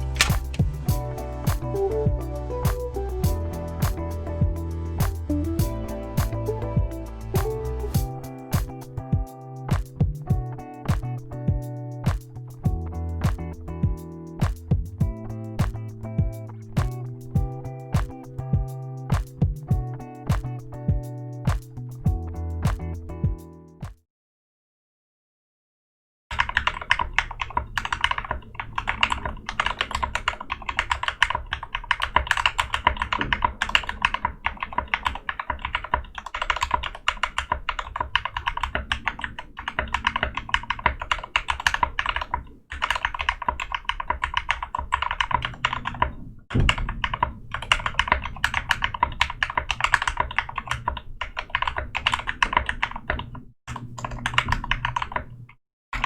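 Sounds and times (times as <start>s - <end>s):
mechanical keyboard typing: 0.0s - 1.8s, 26.3s - 56.0s.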